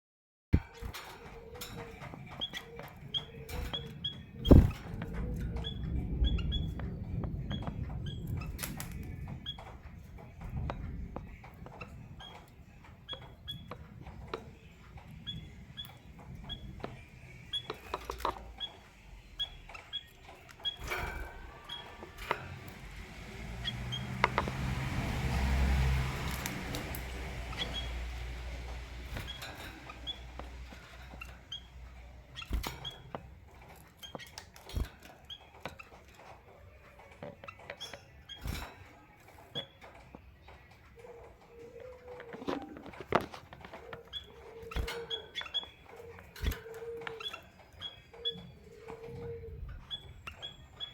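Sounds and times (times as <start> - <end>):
birds chirping: 0.6 - 50.9
dull thumps: 3.6 - 5.8
light clicks and taps: 19.7 - 47.9.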